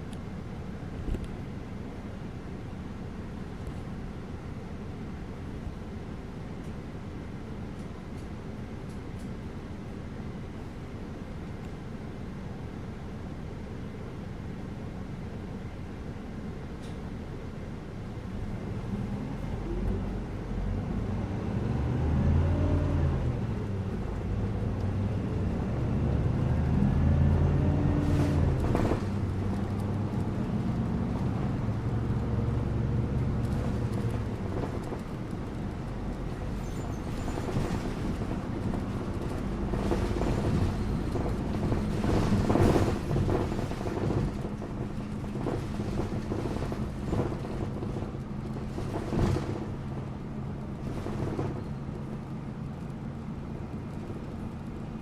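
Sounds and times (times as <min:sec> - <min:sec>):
bus engine hum: 0:00.0 - 0:55.0
road rumble: 0:00.0 - 0:55.0
knocks and rattles: 0:36.2 - 0:50.1, 0:50.8 - 0:51.9.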